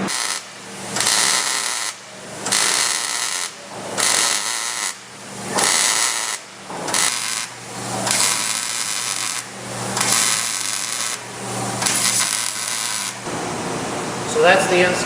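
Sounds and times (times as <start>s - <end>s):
welder crackling hiss: 0.0s - 5.0s, 5.6s - 7.5s, 8.1s - 11.2s, 11.8s - 13.2s
steady low hum: 0.0s - 15.0s.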